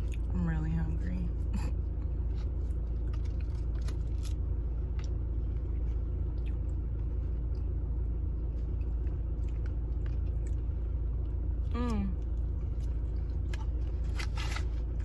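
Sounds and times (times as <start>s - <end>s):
low rumble: 0.0s - 15.0s
biting and chewing: 1.8s - 15.0s
small clicks and scrapes: 13.5s - 15.0s.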